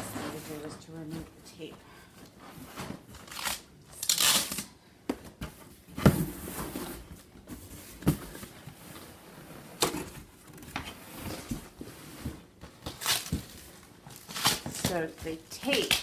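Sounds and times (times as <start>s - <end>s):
cardboard rustling: 0.0s - 1.7s
packing tape being pulled off: 3.2s - 4.7s, 12.9s - 14.9s.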